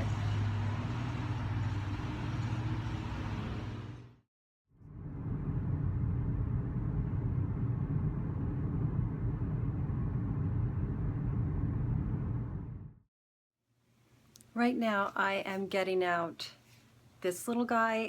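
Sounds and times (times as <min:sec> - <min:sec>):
road vehicle rumbling: 0:00.0 - 0:04.2, 0:04.8 - 0:13.0.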